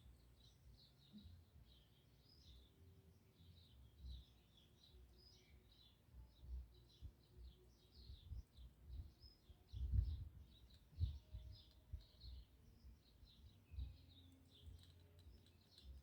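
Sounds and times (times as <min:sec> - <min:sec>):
faint birds chirping: 0:00.0 - 0:16.0.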